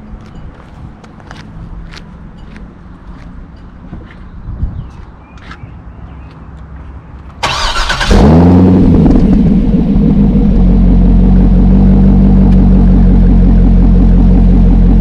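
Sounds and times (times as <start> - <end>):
car engine revving and idling: 7.4 - 15.0.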